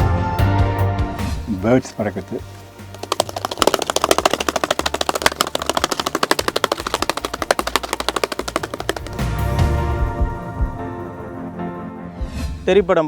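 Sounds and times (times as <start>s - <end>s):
bird wings flapping: 1.6s - 9.5s.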